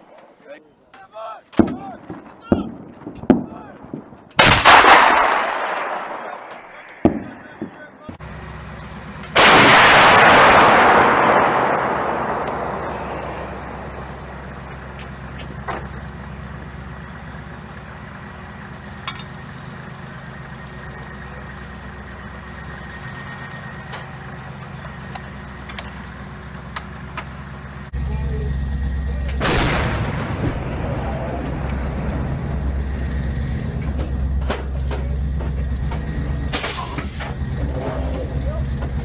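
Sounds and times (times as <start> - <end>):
artillery gun blast: 1.6 - 7.9, 9.3 - 15.0, 29.4 - 32.6
vehicle engine idling: 1.8 - 39.0.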